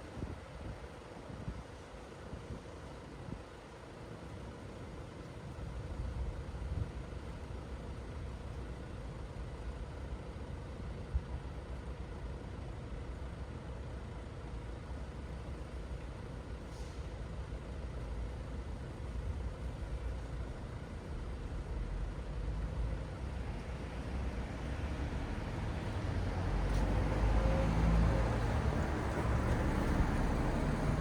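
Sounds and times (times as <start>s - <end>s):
city road traffic rumble: 0.0s - 31.0s
brief hiss: 16.6s - 17.2s.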